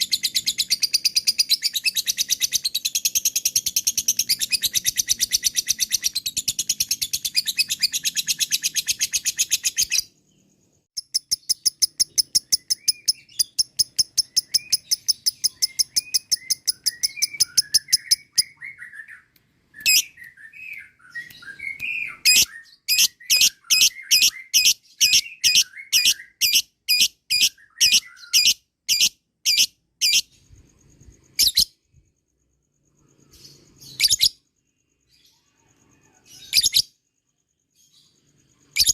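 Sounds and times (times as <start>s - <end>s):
soft low bird chirps: 0.0s - 38.9s.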